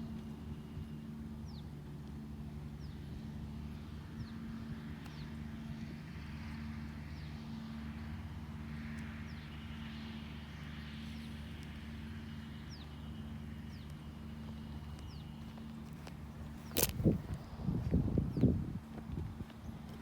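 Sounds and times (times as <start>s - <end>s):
vehicle motor humming: 0.0s - 20.0s.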